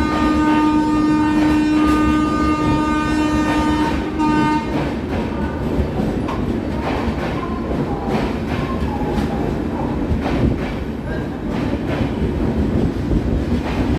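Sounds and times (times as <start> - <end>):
train horn: 0.0 - 5.0
train wheels clattering on rails: 0.0 - 13.9.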